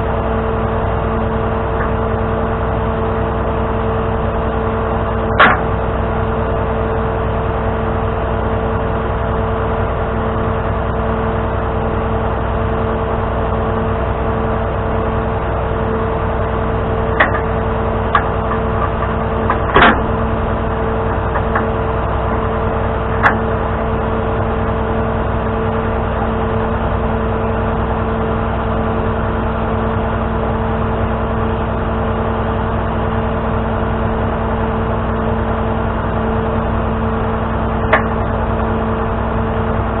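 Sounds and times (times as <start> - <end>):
tow truck engine running: 0.0 - 40.0
sharp clicks or knocks: 5.4 - 5.7.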